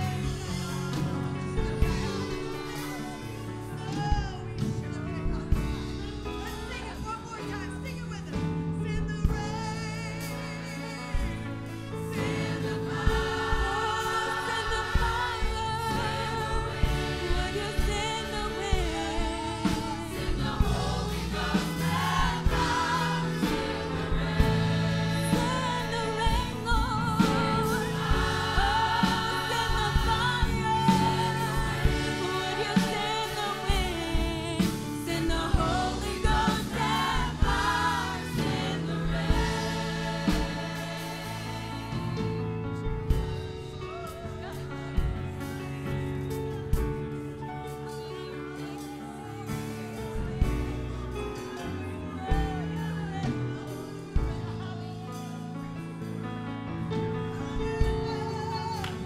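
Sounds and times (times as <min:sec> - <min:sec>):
bass notes: 0:00.0 - 0:47.3
choir singing gospel song: 0:00.0 - 0:59.0
drum beat: 0:12.2 - 0:44.2.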